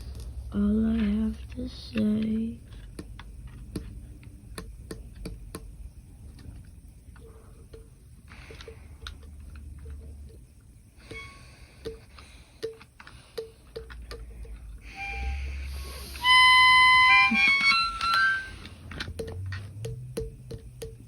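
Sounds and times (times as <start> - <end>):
musical notes: 14.8 - 19.0.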